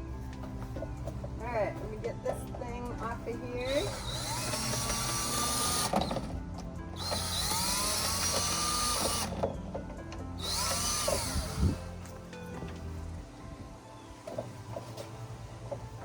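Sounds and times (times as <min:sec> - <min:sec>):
cordless drill motor whine: 0:03.6 - 0:09.6, 0:10.3 - 0:12.1.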